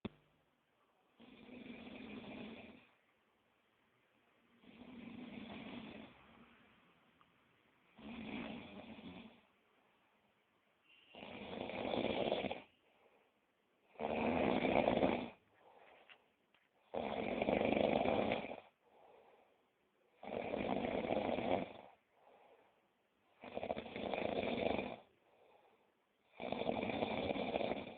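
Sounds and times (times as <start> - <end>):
man snoring heavily: 1.2 - 2.9, 4.6 - 6.1, 8.0 - 9.4, 11.2 - 12.7, 13.9 - 15.4, 16.9 - 18.7, 20.2 - 22.0, 23.4 - 25.1, 26.3 - 27.9.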